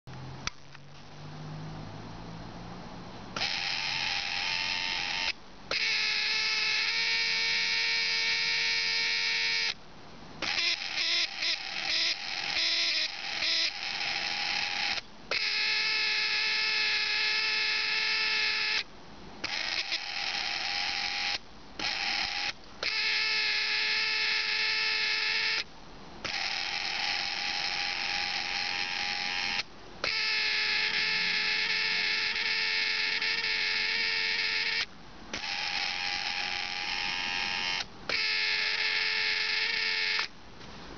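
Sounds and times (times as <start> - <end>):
window motor whining: 26.4 - 40.3.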